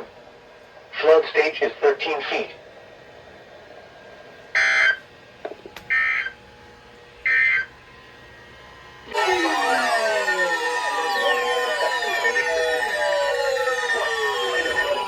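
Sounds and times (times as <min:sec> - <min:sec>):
sweeping falling pitched tone: 0:09.1 - 0:15.0
digital data burst warbles: 0:09.2 - 0:15.0.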